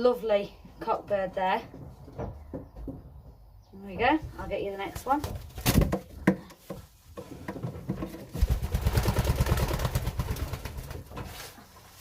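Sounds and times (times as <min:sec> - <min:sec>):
pigeon wings flapping: 0:08.4 - 0:11.1.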